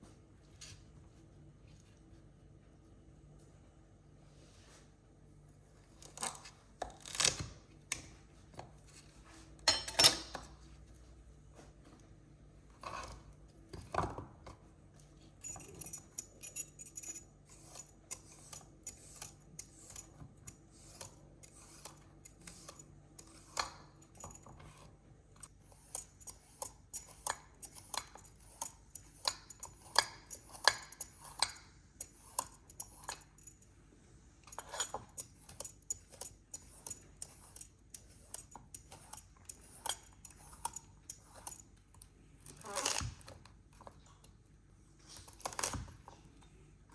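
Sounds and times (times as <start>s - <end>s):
utensils tapping against dishes: 9.7s - 10.6s.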